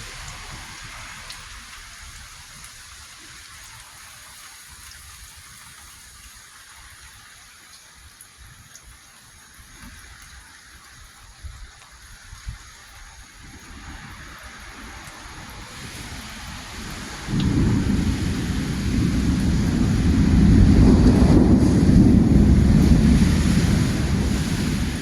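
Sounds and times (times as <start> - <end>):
low rumble of thunder: 0.0 - 2.9, 13.4 - 25.0
steady rain hissing: 0.0 - 25.0.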